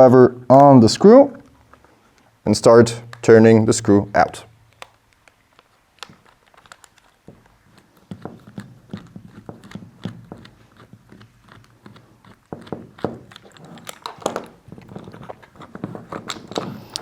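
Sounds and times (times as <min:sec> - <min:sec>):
screwdriver clicking on screw: 0:06.0 - 0:17.0.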